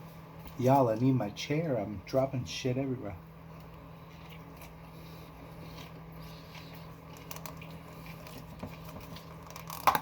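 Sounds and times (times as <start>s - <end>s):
person chewing sandwich: 3.4s - 10.0s.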